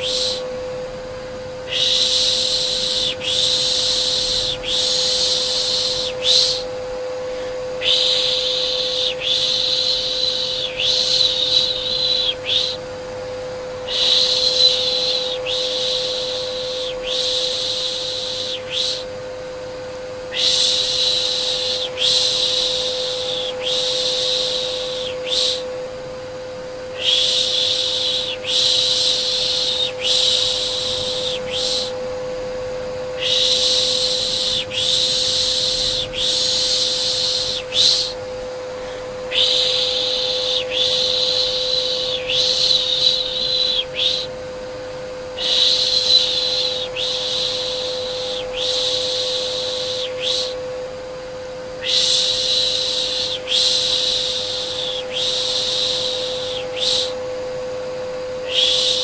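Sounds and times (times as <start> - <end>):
person shushing: 0.0 - 0.5, 1.7 - 12.8, 13.8 - 19.1, 20.3 - 25.7, 26.9 - 32.0, 33.2 - 44.3
vacuum cleaner motor whine: 0.0 - 59.0.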